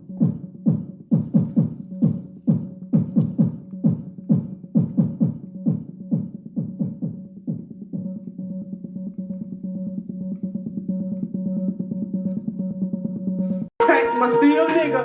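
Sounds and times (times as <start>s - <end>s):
steady higher tone: 13.8s - 15.0s.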